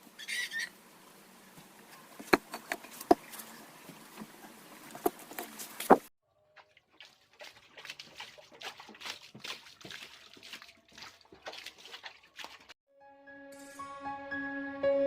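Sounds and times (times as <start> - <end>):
water dripping and trickling: 6.6 - 12.8.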